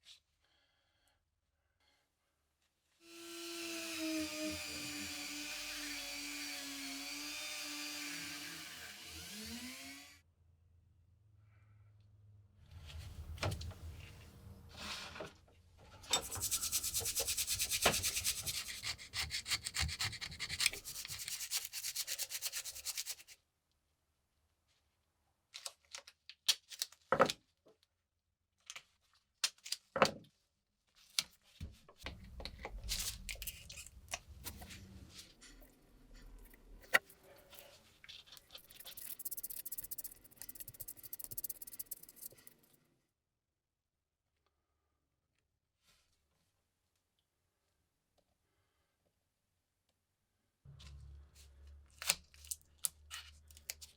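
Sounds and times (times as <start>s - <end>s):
sanding metal parts by hand: 16.1s - 23.3s, 38.6s - 42.5s
sharp clicks and knocks: 38.6s - 42.5s.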